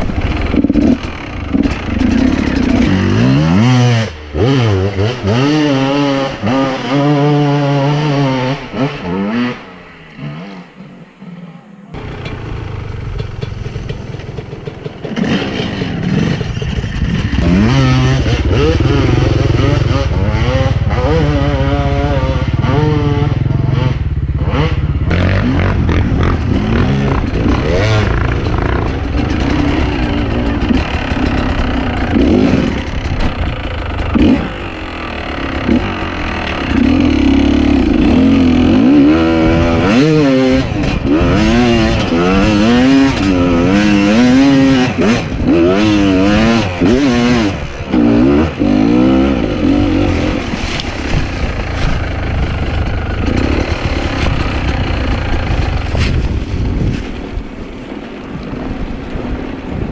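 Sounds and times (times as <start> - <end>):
dirt bike engine revving: 0.0 - 11.2, 11.9 - 57.1.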